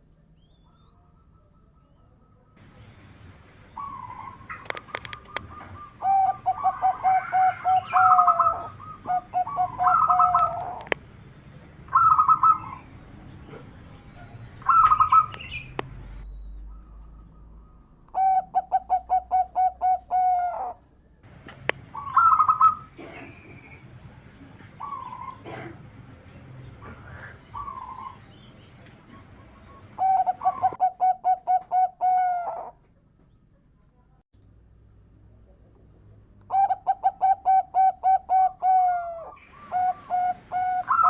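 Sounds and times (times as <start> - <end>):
doves cooing: 0.7 - 11.0, 11.8 - 32.8, 36.5 - 41.0
sharp clicks: 4.5 - 5.5, 14.8 - 16.2.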